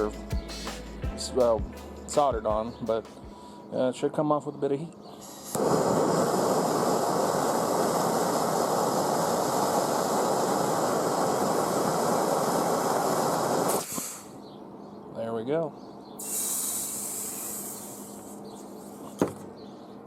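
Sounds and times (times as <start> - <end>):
blowtorch flame: 5.2 - 14.4, 16.2 - 19.2.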